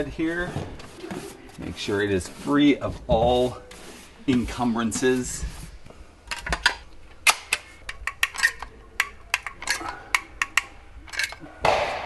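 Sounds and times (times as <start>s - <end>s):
rustling scrape: 0.0s - 5.8s
hard objects clicking and clattering: 7.4s - 11.8s.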